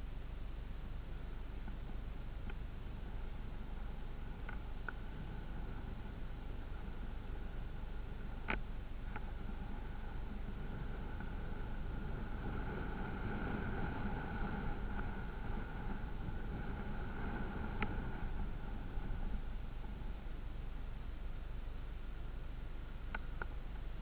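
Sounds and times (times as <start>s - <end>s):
off-road vehicle running: 0.0s - 24.0s
wind on microphone: 1.6s - 20.5s.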